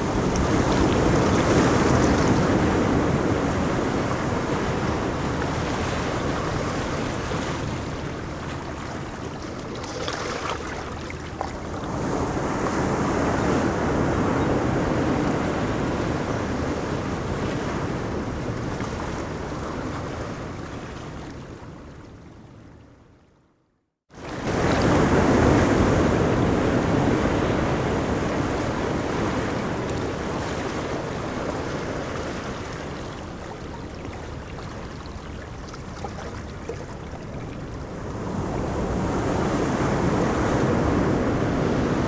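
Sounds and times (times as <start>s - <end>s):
ocean waves breaking on beach: 0.0s - 21.9s, 24.1s - 42.0s.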